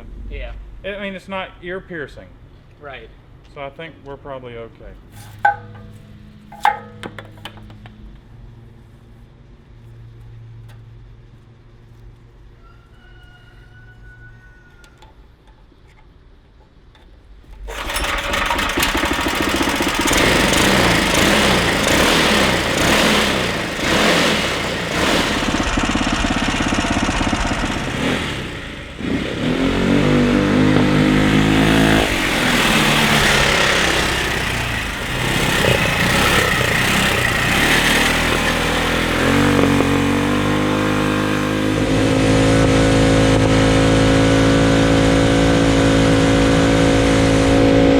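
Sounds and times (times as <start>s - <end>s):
loud engine revving: 17.7s - 47.9s.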